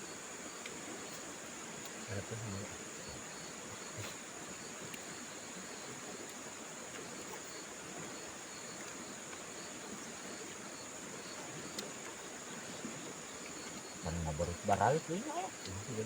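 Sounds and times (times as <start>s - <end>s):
background hiss: 0.0s - 16.0s
high-pitched insect chorus: 0.0s - 16.0s
faint ticks: 0.5s - 2.2s, 4.8s - 9.7s, 11.2s - 12.2s, 13.3s - 16.0s.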